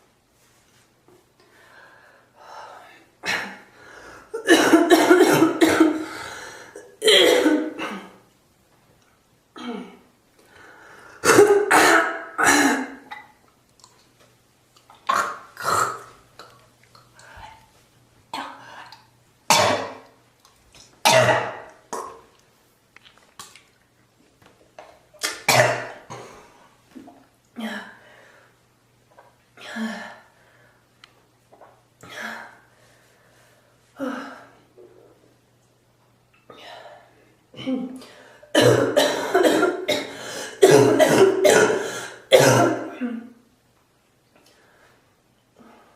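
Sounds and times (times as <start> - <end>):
person coughing harshly: 4.4 - 6.1, 6.8 - 8.2, 11.2 - 13.2, 19.5 - 20.0, 21.0 - 22.2, 25.5 - 26.4, 38.6 - 43.3.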